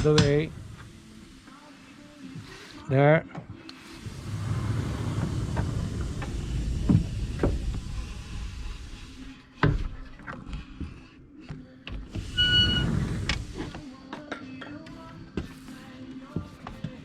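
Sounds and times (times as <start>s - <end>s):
sliding door rolling rumble: 3.9s - 9.3s, 12.2s - 13.7s.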